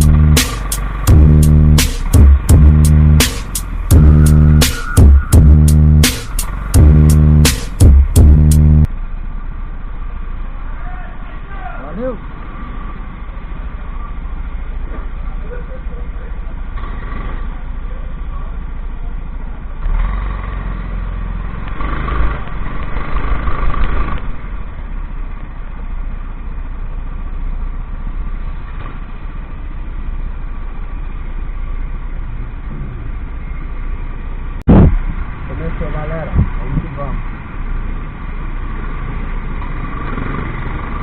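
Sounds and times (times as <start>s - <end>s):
kart engines running: 10.8s - 25.0s, 35.5s - 41.0s.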